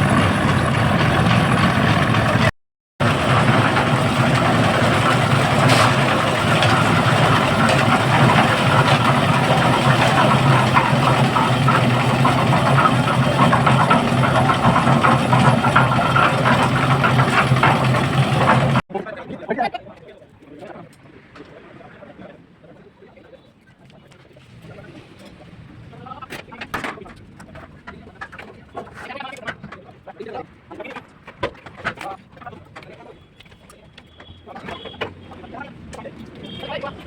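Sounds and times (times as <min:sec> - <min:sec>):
engine running with low hum: 0:00.0 - 0:18.8
light irregular clatter: 0:03.1 - 0:18.8, 0:26.0 - 0:37.0.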